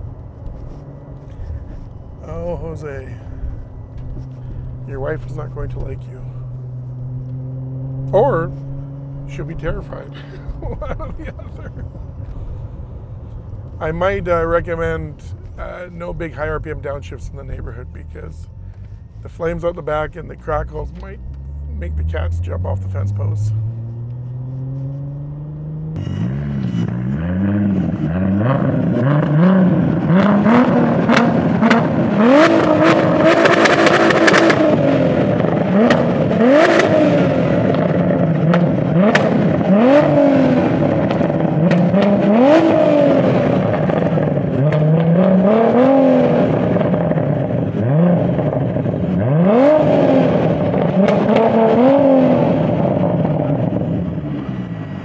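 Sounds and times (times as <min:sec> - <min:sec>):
sharp exhaust cracks: 0:11.5 - 0:55.0
car engine revving hard: 0:19.9 - 0:55.0.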